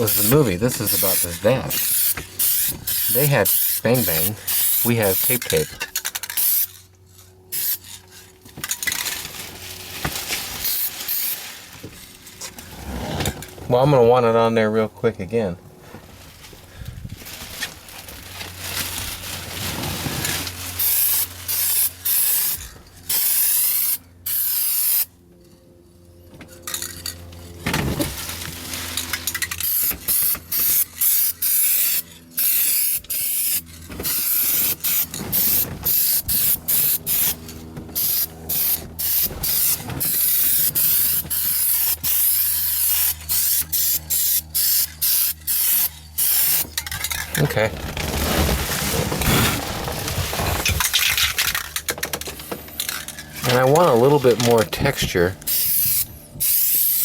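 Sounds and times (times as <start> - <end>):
spray paint can hissing: 0.0 - 5.6, 6.2 - 6.8, 7.5 - 8.0, 10.6 - 11.4, 20.8 - 25.1, 29.3 - 37.4, 38.0 - 46.6, 55.5 - 57.0
low steady hum: 24.0 - 56.5.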